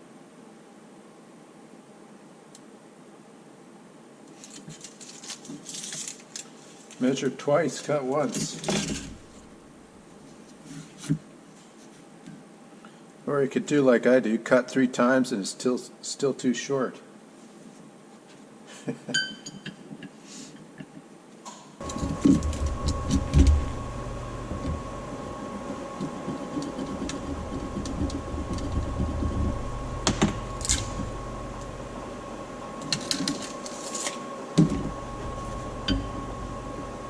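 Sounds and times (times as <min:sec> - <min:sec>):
power tool whining: 0:21.8 - 0:37.0
knocks and clatter: 0:26.0 - 0:31.2.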